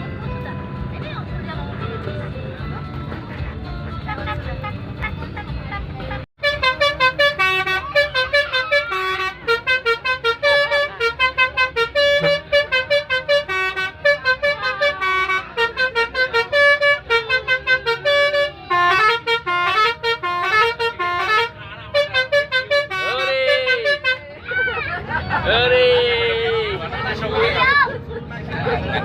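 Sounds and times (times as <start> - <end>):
musical bus horn playing tune: 6.4 - 24.7.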